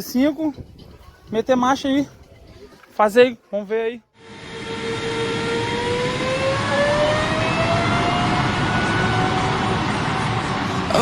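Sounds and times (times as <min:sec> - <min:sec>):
motor whine rising in pitch: 0:04.2 - 0:11.0
continuous rushing noise: 0:04.3 - 0:11.0.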